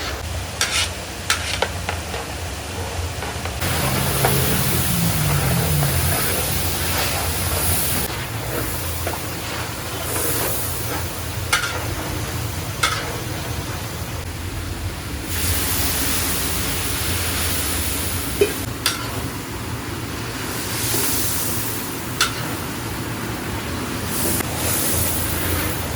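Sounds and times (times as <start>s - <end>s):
food sizzling in a pot: 3.6s - 14.0s, 15.2s - 25.9s.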